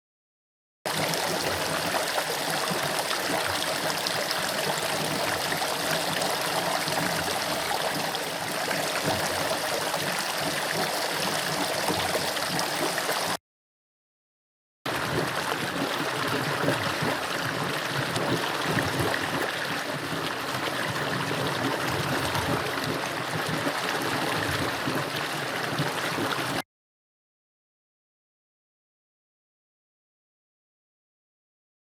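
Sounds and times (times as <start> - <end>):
creek flowing and bubbling: 0.9 - 13.4, 14.9 - 26.6.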